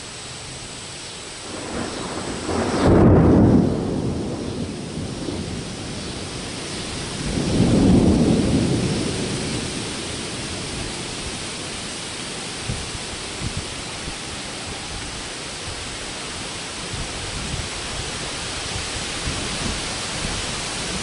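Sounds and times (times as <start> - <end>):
rain falling: 0.0 - 21.0
thunder rumbling: 1.4 - 15.1.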